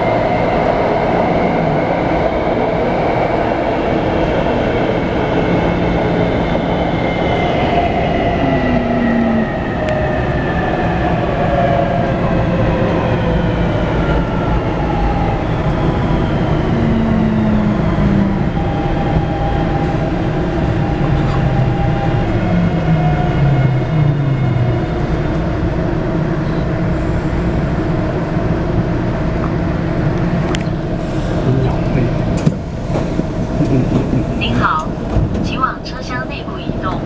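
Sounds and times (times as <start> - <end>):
train running and rail noise: 0.0 - 37.0
traction inverter whine: 14.2 - 37.0.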